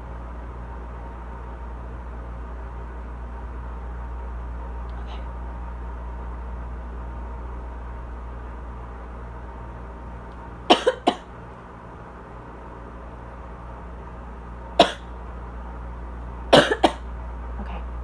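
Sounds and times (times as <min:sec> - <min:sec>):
air conditioner hum: 0:00.0 - 0:18.0
dry coughing: 0:10.7 - 0:11.3, 0:14.8 - 0:15.1, 0:16.5 - 0:17.1.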